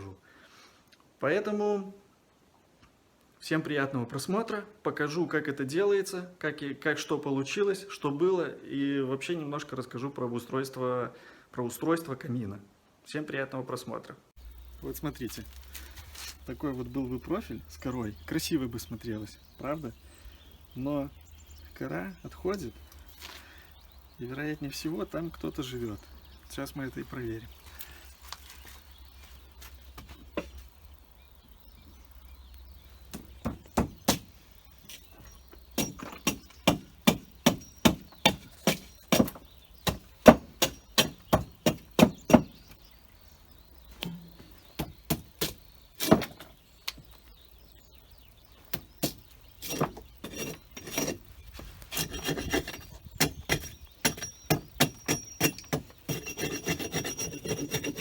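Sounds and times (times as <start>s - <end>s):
sharp knocks on a log: 33.1s - 34.3s.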